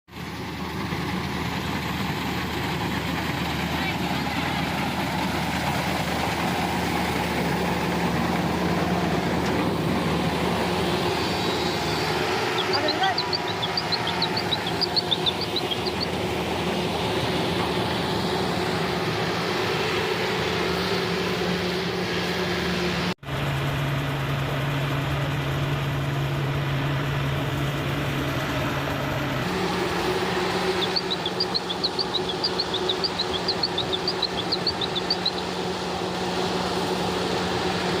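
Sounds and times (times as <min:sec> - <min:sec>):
combine harvester engine hum: 0:00.1 - 0:38.0
short high chirps: 0:11.1 - 0:16.2, 0:30.6 - 0:35.6.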